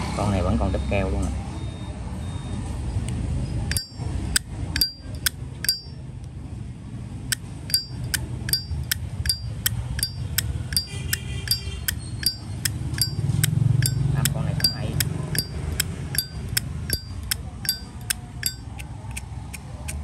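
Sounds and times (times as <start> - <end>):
lighter lid clinking open and shut: 3.7 - 3.9, 7.7 - 19.3.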